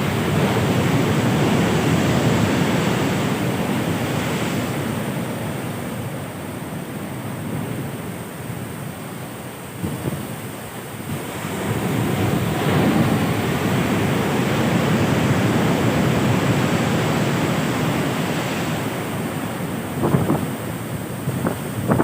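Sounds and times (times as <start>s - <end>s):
ocean waves breaking: 0.0s - 22.0s
wind buffeting microphone: 9.8s - 10.4s, 11.0s - 22.0s.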